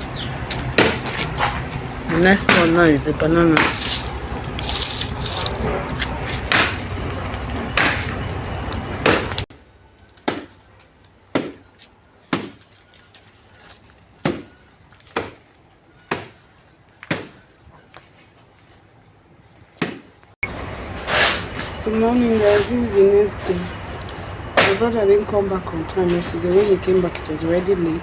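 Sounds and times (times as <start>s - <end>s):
blade chopping plant stem: 2.4s - 2.9s, 3.5s - 4.0s, 11.3s - 11.6s.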